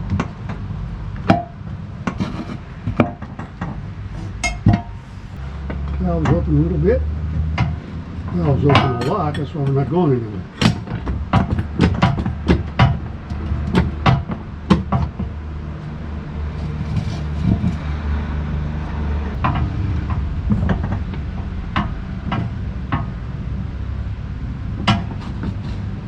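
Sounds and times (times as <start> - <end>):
low mechanical hum: 0.0 - 26.0.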